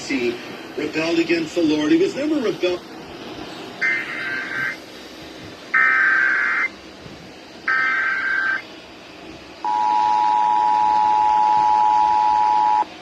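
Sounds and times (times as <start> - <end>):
digital warbling data bursts: 3.8 - 4.8, 5.8 - 6.7, 7.7 - 8.6
two-tone attention signal: 9.7 - 12.9.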